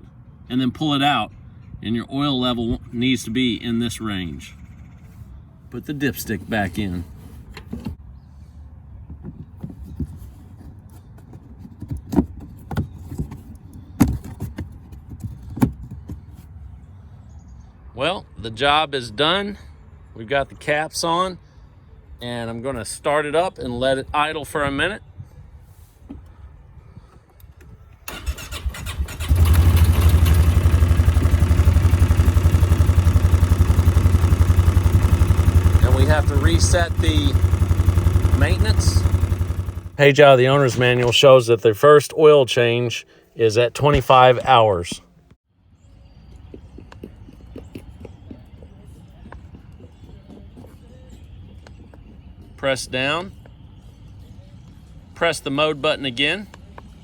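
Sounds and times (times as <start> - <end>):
electric starter cranking: 28.1 - 40.0
engine idling: 28.1 - 41.2.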